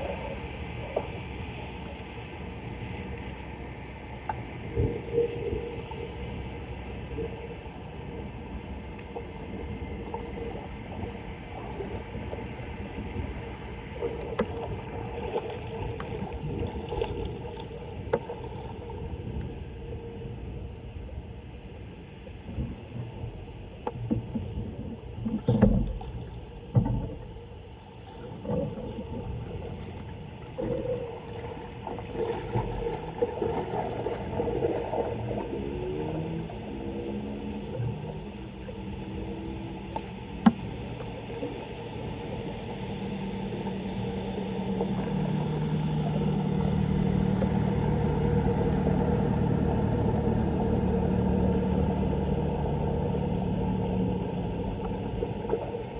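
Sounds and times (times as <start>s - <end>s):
knocks and splashes: 28.0s - 35.5s
water rushing into storm drain: 30.6s - 36.4s.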